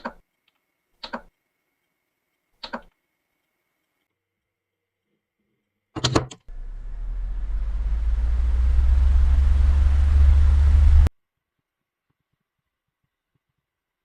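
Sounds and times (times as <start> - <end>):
machine motor humming: 6.5 - 11.1.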